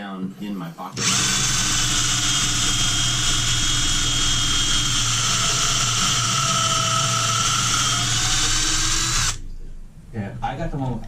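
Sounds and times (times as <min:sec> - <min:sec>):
power tool whirring: 0:01.0 - 0:09.4.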